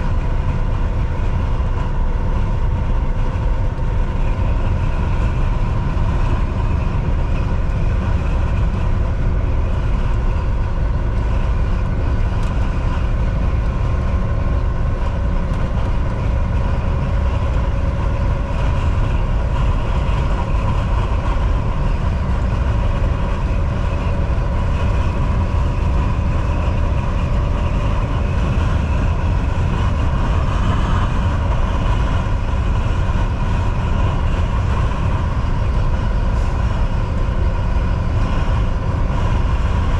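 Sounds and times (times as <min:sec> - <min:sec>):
faint steady whine: 0:00.0 - 0:39.9
truck engine and road rumble: 0:00.0 - 0:39.9.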